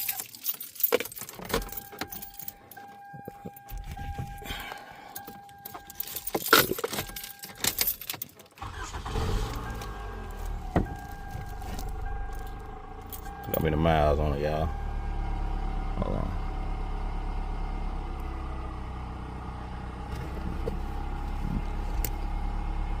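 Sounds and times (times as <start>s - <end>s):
car keys jangling: 0.0s - 13.8s
car engine starting and running: 0.0s - 23.0s
dashboard chime: 1.6s - 6.3s.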